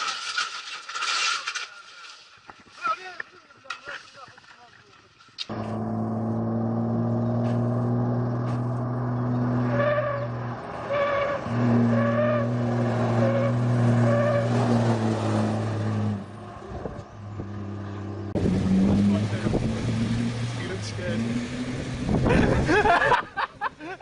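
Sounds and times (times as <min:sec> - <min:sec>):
motor vehicle humming: 0:05.4 - 0:24.0.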